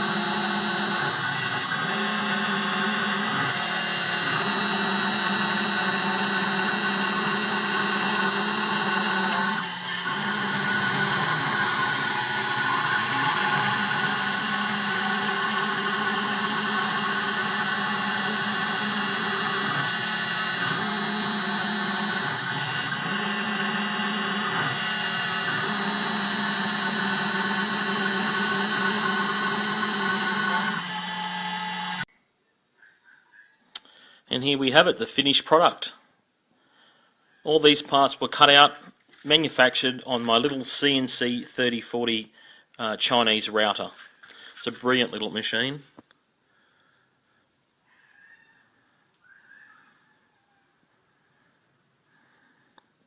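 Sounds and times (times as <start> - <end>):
milling plastic cutting noise: 0.0 - 32.0
router spindle whining: 0.0 - 32.1.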